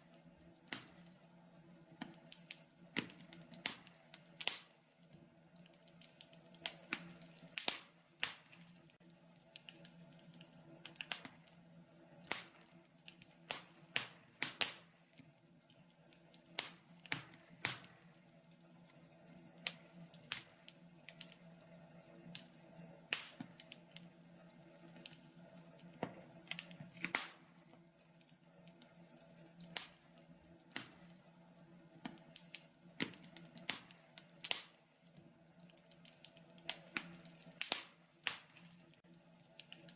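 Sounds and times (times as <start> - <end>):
faint steady hum: 0.0 - 39.9
wood fire crackling and popping: 0.0 - 39.9.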